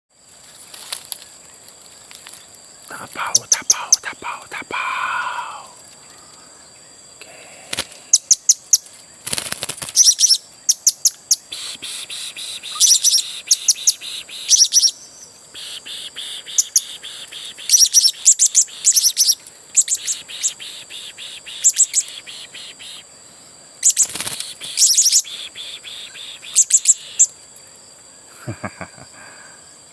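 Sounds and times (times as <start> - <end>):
rustle: 0.1 - 3.2, 5.7 - 11.5, 16.5 - 22.2, 23.0 - 25.3, 26.0 - 29.9
parrots chirping: 12.7 - 15.2.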